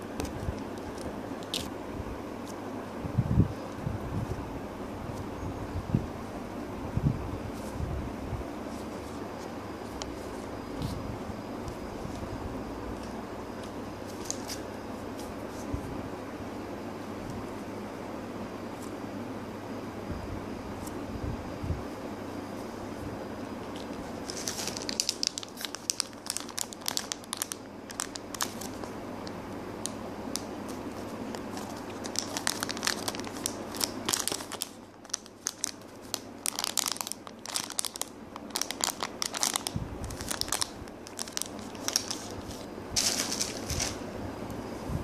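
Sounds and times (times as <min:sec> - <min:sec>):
low background hum: 0:00.0 - 0:45.0
plastic packaging crinkling: 0:14.0 - 0:14.7, 0:23.6 - 0:44.1.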